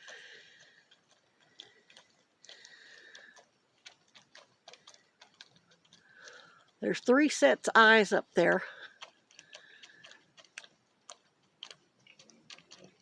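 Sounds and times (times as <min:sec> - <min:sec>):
faint clicks: 0:00.0 - 0:06.8, 0:08.6 - 0:13.0.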